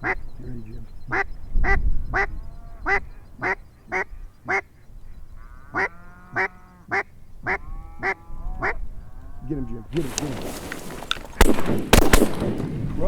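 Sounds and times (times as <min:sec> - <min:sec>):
duck quacking: 0:00.0 - 0:04.8, 0:05.4 - 0:08.8.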